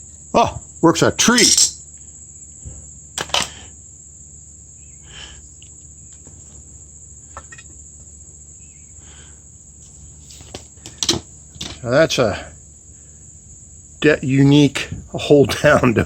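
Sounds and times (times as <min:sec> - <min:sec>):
metal parts clicking and knocking: 0:10.5 - 0:11.8.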